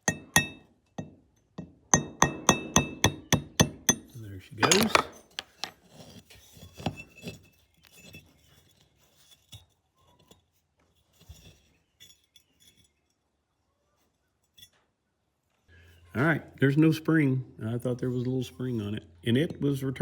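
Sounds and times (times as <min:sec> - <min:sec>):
metal parts clinking: 0:04.6 - 0:05.8.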